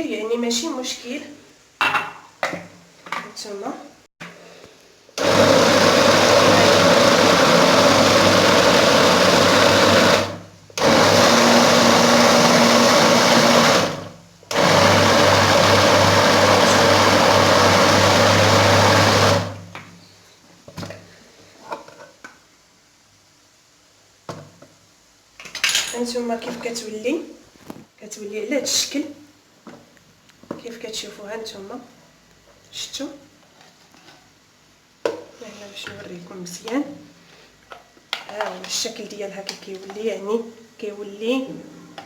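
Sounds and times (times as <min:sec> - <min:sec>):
electric blender grinding: 0:05.2 - 0:19.7.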